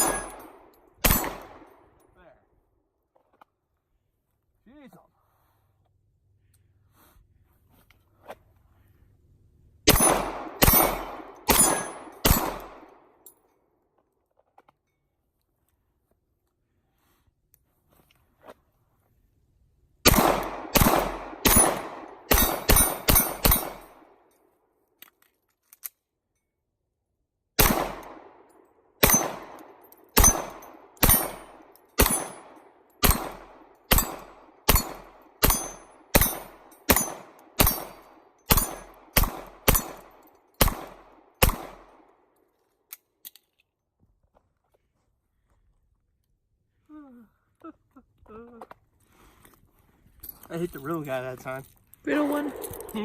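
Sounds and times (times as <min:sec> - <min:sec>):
pistol shots: 0:00.0 - 0:01.9, 0:09.9 - 0:13.1, 0:20.0 - 0:24.2, 0:27.6 - 0:42.1.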